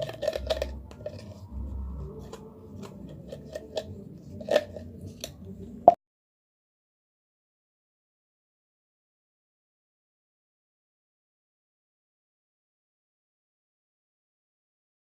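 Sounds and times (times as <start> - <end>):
utensil scraping a container: 0.0 - 5.4.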